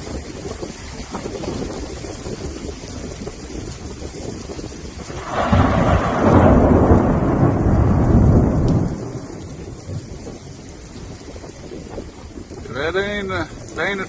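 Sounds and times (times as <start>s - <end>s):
thunder rumbling: 0.0s - 14.0s.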